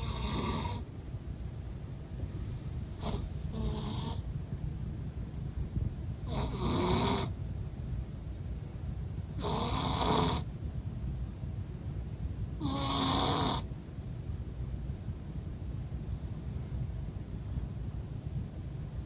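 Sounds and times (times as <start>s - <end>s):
cat snoring: 0.0s - 0.8s, 3.0s - 4.2s, 6.2s - 7.3s, 9.4s - 10.5s, 12.6s - 13.7s.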